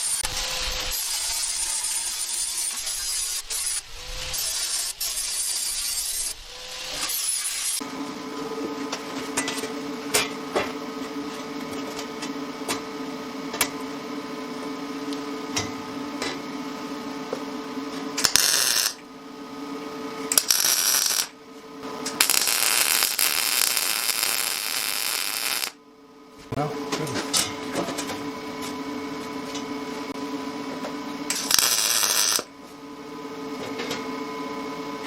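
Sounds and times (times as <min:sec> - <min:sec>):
machine humming: 0:12.2 - 0:35.0.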